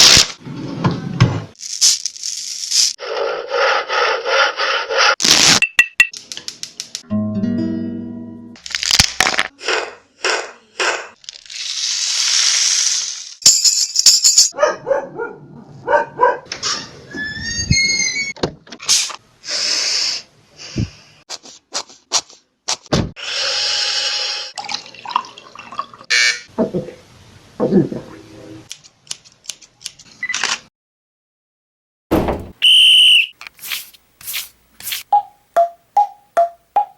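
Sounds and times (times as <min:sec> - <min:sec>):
hisses: 0:11.6 - 0:13.4
short rising whistles: 0:32.6 - 0:33.3.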